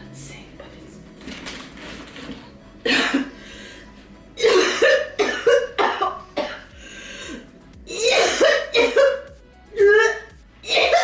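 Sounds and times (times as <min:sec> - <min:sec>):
woman coughing: 0:02.8 - 0:03.3, 0:04.4 - 0:06.7, 0:07.9 - 0:11.0.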